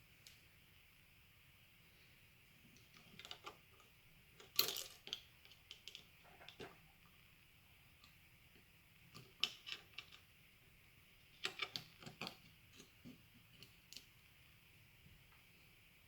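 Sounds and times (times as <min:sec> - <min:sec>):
small parts clicking and tapping: 0:02.7 - 0:06.8, 0:08.0 - 0:10.3, 0:11.4 - 0:14.2.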